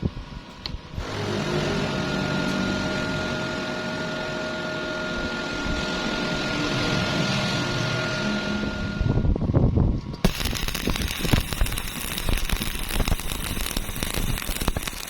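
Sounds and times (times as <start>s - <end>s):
welding arc crackling hiss: 10.2s - 15.0s.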